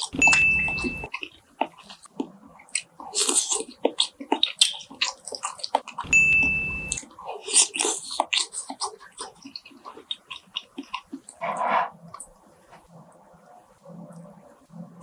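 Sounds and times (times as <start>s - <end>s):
crunching fried chicken: 0.0s - 12.3s
high tone over low buzz: 6.1s - 7.0s.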